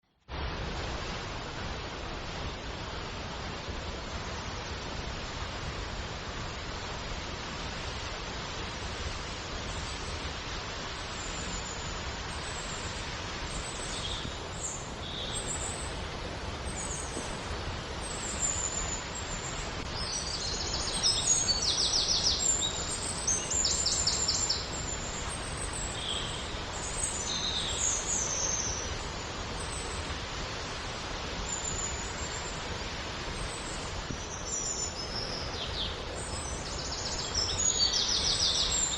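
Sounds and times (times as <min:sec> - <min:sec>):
flowing water rushing: 0:00.3 - 0:38.9
small birds chirping: 0:11.2 - 0:30.4, 0:31.3 - 0:38.9.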